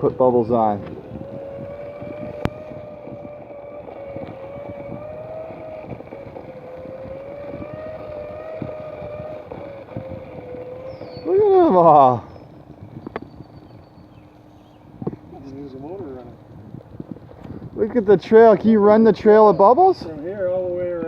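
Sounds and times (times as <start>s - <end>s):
toy electric motor whining: 0.2s - 12.3s.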